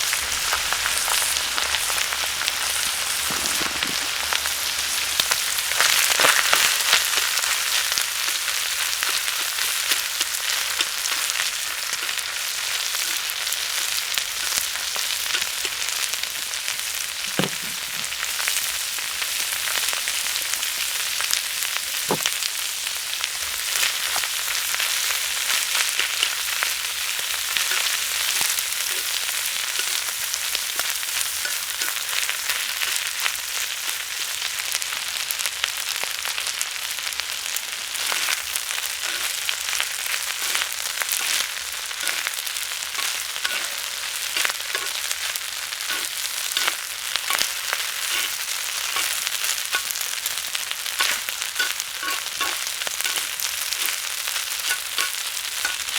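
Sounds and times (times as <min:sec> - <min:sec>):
food sizzling on a griddle: 0:00.0 - 0:55.9
sharp pops and crackles: 0:02.8 - 0:05.2, 0:22.1 - 0:22.4.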